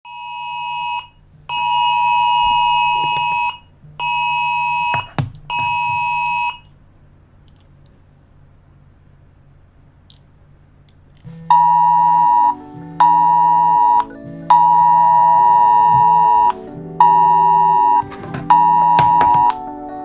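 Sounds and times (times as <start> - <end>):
two-tone alert alarm: 0.1 - 6.7, 11.5 - 19.6
synthesized keyboard chords: 11.3 - 20.0.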